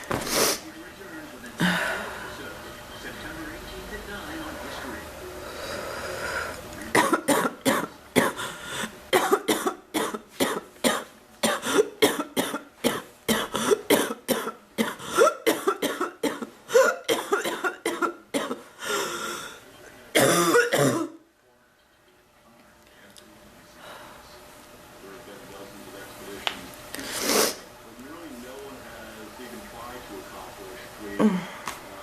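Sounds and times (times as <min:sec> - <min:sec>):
woman coughing: 0:06.9 - 0:08.5, 0:09.1 - 0:18.6, 0:20.2 - 0:21.2
breathy gasp: 0:31.2 - 0:31.8.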